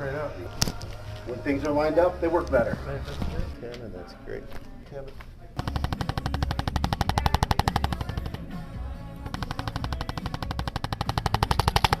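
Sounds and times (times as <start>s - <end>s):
background music: 0.0s - 12.0s
rapid sharp tapping: 5.6s - 8.6s, 9.2s - 12.0s.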